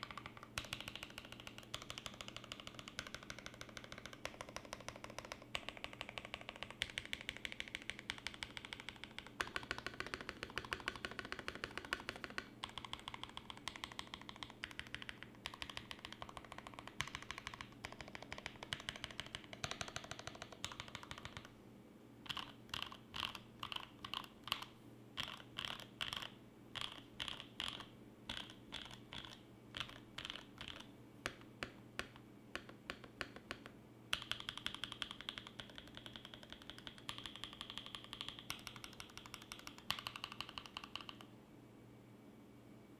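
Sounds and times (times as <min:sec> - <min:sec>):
mechanical keyboard typing clacks: 0:00.0 - 0:21.5, 0:22.3 - 0:41.3.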